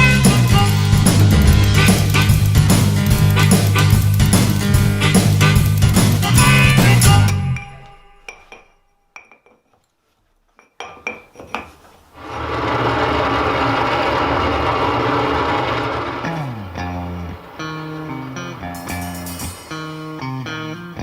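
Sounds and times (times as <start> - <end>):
music: 0.0 - 9.0, 16.3 - 21.0
loud steady motor: 1.0 - 4.5, 12.2 - 18.8.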